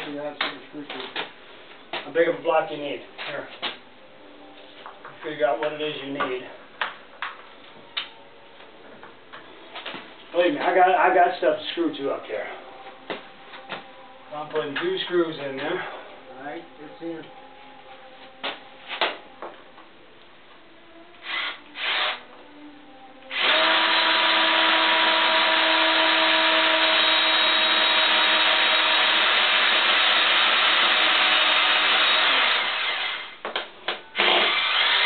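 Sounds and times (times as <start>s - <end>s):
power tool motor running: 23.3s - 33.3s, 34.2s - 35.0s.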